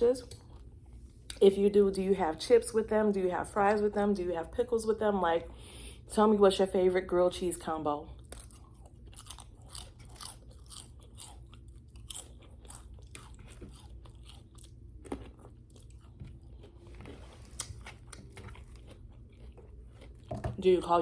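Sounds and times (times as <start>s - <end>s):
chewing crunchy food: 0.2s - 1.4s, 8.1s - 21.0s.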